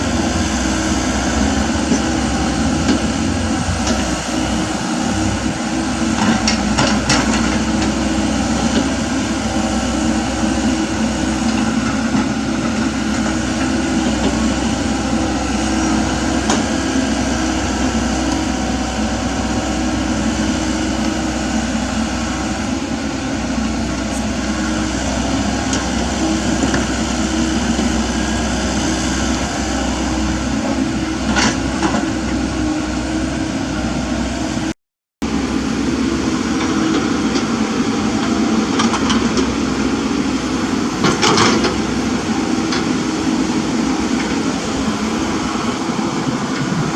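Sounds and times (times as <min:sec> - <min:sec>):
excavator engine running: 0:00.0 - 0:46.9
hydraulics whining: 0:00.0 - 0:46.9
bucket clanking: 0:43.8 - 0:46.9.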